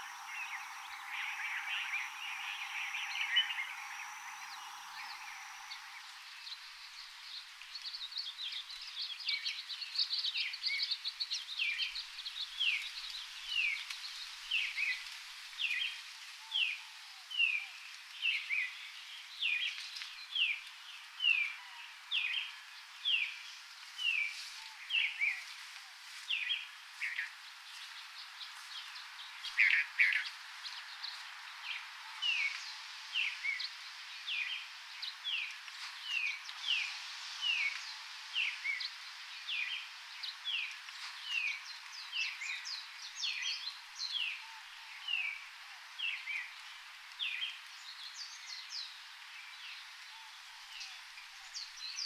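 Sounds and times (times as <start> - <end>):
bird singing sharp notes: 0.0 - 6.2.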